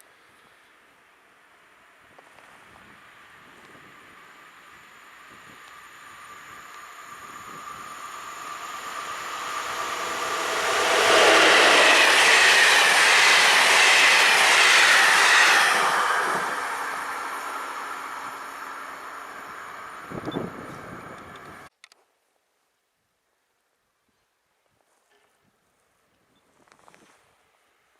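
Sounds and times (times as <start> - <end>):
wheel and rail noise: 1.6 - 21.7
train passing: 3.0 - 21.7.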